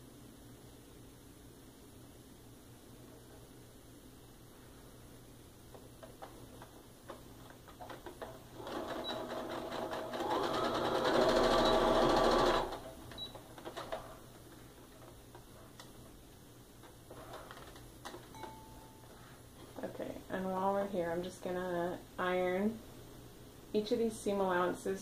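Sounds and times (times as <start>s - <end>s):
sewing machine stitching: 7.8s - 14.2s.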